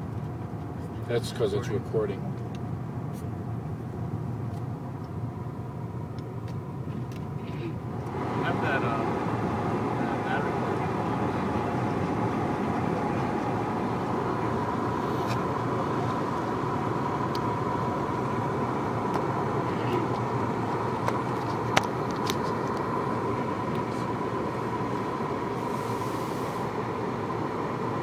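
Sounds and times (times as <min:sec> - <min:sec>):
road and engine rumble: 0:00.0 - 0:28.0
faint steady whine: 0:07.4 - 0:28.0.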